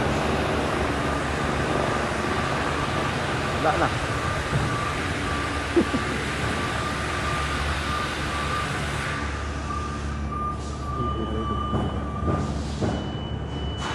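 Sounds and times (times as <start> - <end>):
helicopter whine and rush: 0.0 - 9.7.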